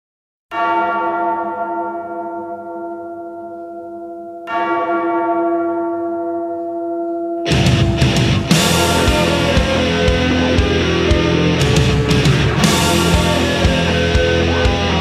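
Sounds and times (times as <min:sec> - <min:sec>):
large bell tolling: 0:00.5 - 0:15.0.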